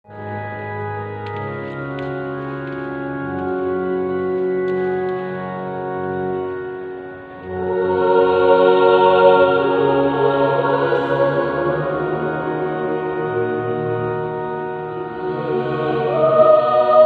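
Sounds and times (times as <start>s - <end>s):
organ chords: 0.1s - 17.0s
choir singing a hymn: 7.4s - 17.0s.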